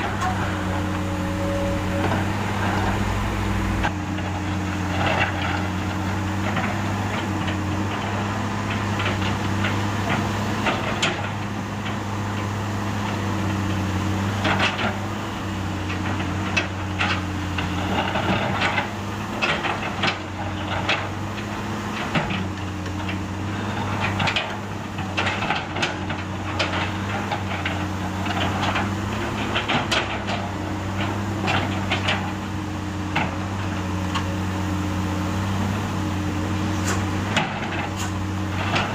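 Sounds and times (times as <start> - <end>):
excavator diesel engine running: 0.0 - 38.9.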